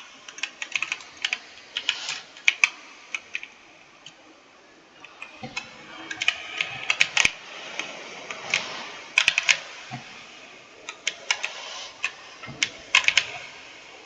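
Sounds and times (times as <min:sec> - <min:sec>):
computer keyboard typing: 0:00.0 - 0:03.6, 0:05.0 - 0:10.1, 0:10.8 - 0:13.6.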